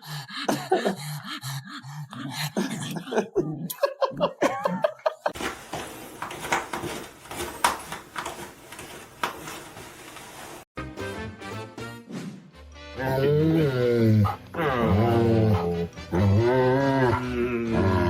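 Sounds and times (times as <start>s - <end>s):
person laughing: 0.4s - 5.4s.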